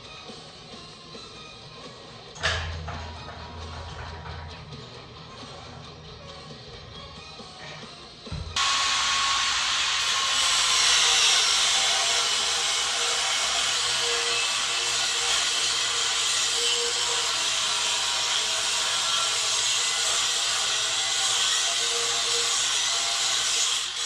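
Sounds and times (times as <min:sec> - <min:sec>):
power tool grinding metal: 0:08.6 - 0:24.0.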